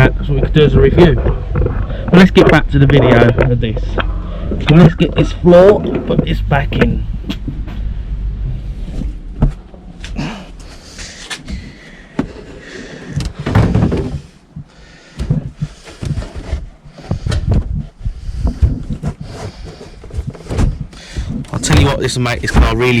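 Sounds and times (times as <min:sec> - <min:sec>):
floor panel knocks and clunks: 0:13.1 - 0:14.4, 0:15.2 - 0:23.0
heavy thump: 0:13.1 - 0:19.6, 0:20.2 - 0:23.0.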